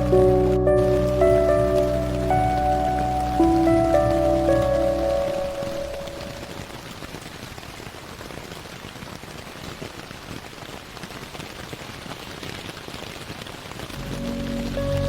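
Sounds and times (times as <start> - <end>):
slow ambient music: 0.0 - 6.6, 14.0 - 15.0
rain patter: 0.0 - 15.0.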